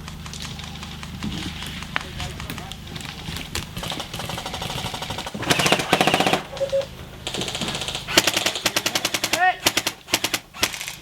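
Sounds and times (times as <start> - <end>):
airsoft rifle full-auto bursts: 3.7 - 6.5, 7.2 - 11.0.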